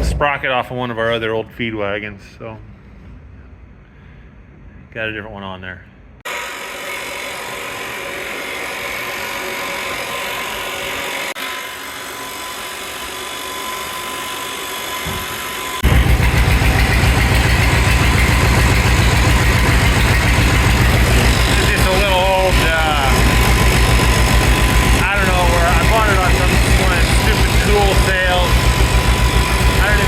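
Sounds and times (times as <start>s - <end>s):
engine running: 13.1s - 30.0s.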